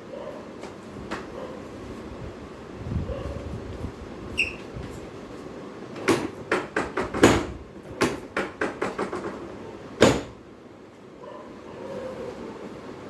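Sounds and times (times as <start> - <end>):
knocks and clacks on table: 6.0 - 10.4.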